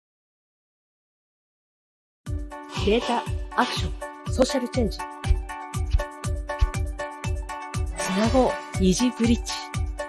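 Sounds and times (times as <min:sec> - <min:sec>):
upbeat music with drum beat: 0:02.3 - 0:10.0.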